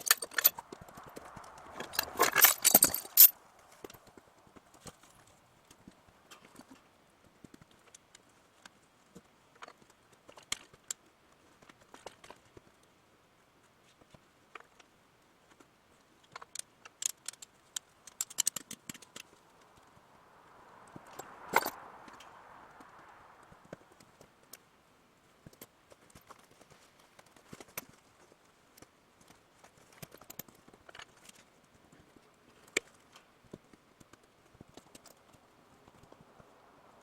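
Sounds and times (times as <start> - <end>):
soft hiss: 18.8 - 25.5.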